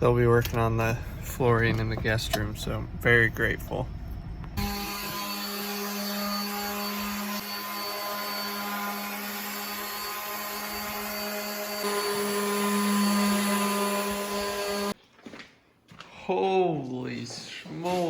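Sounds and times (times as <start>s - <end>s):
electric motor humming: 4.6s - 15.0s.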